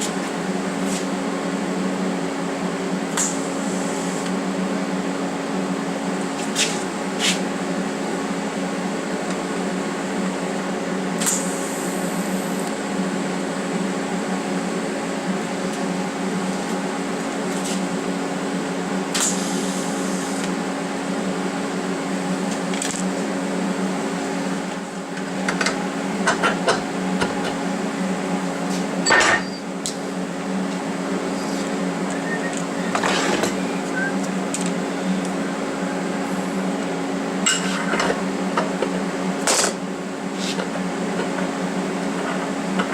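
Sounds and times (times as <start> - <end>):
welder humming: 23.4 - 42.9.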